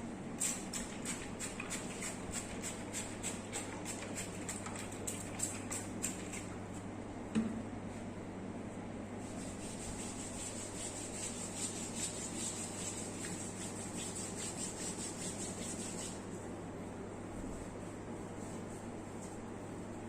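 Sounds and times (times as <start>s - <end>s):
steady low hum: 0.0s - 20.0s
hands rubbing oiled skin: 9.2s - 16.3s.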